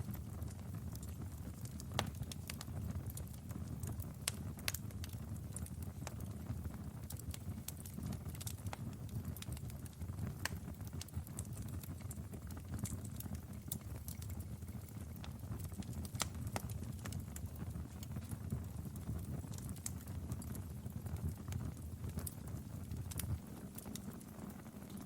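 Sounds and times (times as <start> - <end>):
low rumble of flame: 0.0 - 25.0
wood fire crackling and popping: 0.0 - 25.0.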